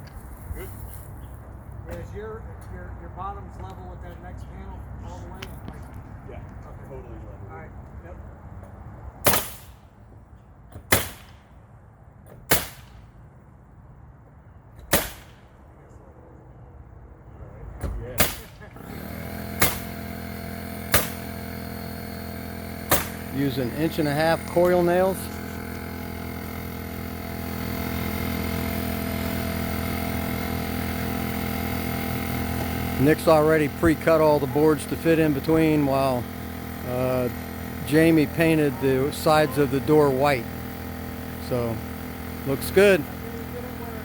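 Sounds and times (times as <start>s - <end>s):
nail gun firing: 9.2s - 9.9s, 10.7s - 11.5s, 12.3s - 13.1s, 14.8s - 15.6s, 18.2s - 33.1s
motor droning: 18.7s - 44.0s.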